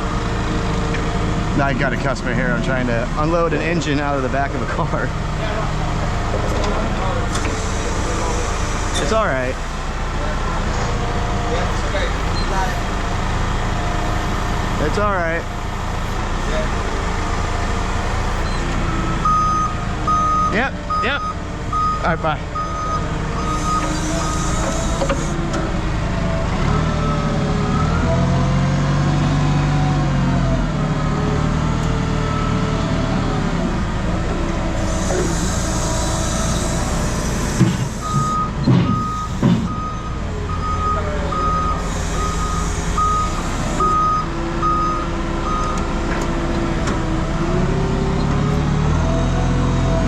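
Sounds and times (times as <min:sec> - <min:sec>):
heavy diesel engine running: 0:00.0 - 0:50.0
hiss bursts: 0:07.3 - 0:09.8, 0:23.5 - 0:25.4, 0:34.8 - 0:38.4, 0:39.0 - 0:39.7, 0:41.8 - 0:43.8
reversing alarm beeps: 0:11.7 - 0:12.9, 0:18.1 - 0:25.3, 0:35.0 - 0:45.9
knocks: 0:38.6 - 0:39.7.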